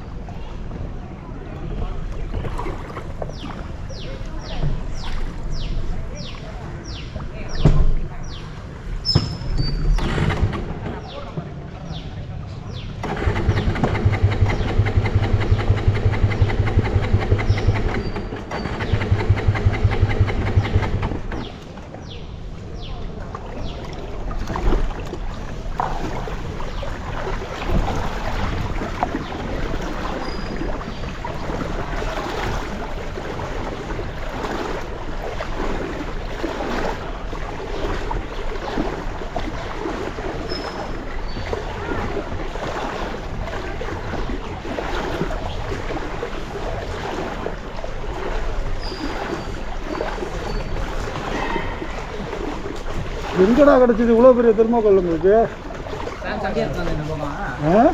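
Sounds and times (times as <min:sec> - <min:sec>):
wind on microphone: 0:00.0 - 0:53.6
water sloshing and splashing: 0:00.0 - 0:57.9
engine running rhythmically: 0:13.0 - 0:21.6.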